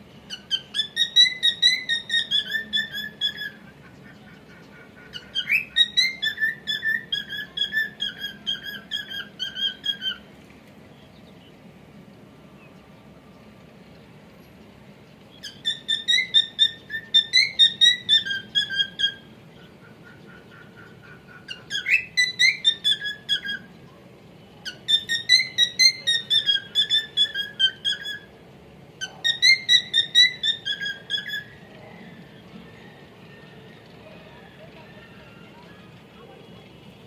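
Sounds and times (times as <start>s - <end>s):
cockatiel whistling song: 0.3s - 3.7s, 5.1s - 10.2s, 15.4s - 19.3s, 20.5s - 23.7s, 24.6s - 28.3s, 29.0s - 31.6s.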